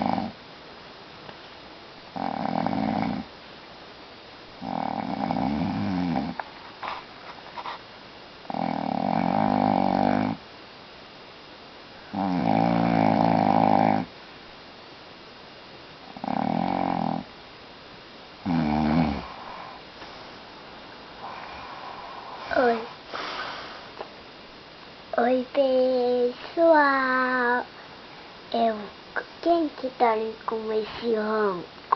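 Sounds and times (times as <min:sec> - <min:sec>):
man snoring: 0:00.0 - 0:00.4, 0:02.2 - 0:03.3, 0:04.6 - 0:06.4, 0:08.5 - 0:10.4, 0:12.1 - 0:14.1, 0:16.2 - 0:17.3, 0:18.4 - 0:19.7.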